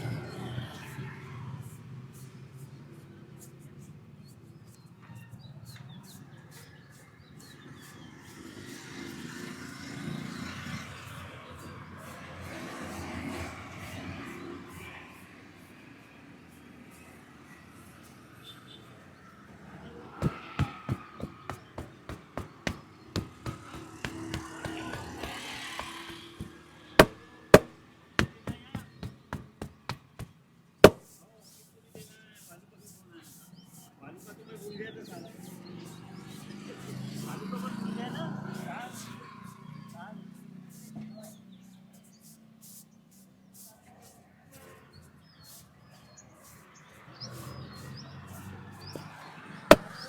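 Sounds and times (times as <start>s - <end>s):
street noise: 0.0s - 50.0s
small birds chirping: 1.6s - 12.6s, 20.2s - 30.4s, 31.1s - 37.7s, 38.4s - 44.2s, 44.9s - 50.0s
hands slapping head: 20.2s - 30.1s
hand chops on head: 20.2s - 31.0s, 49.0s - 50.0s.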